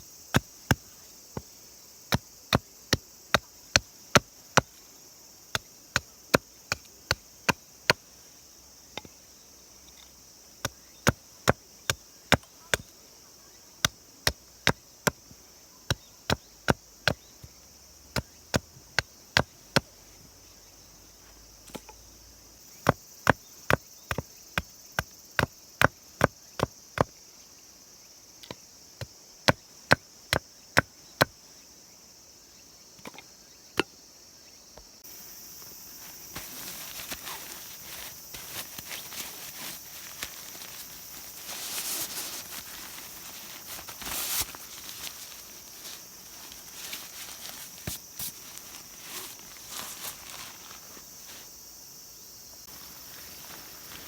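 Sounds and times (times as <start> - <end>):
steady high hiss: 34.0 - 54.0.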